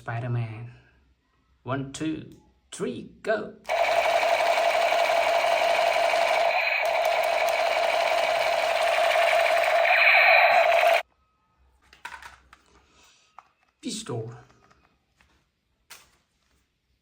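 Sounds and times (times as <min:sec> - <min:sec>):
toy gun electronic buzz-rattle: 0:03.7 - 0:11.0.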